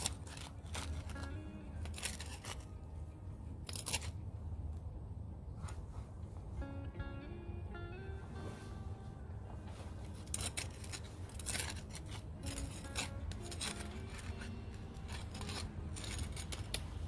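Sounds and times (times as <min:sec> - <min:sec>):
hand tool scraping moss and soil: 0:00.0 - 0:02.7, 0:10.2 - 0:16.8.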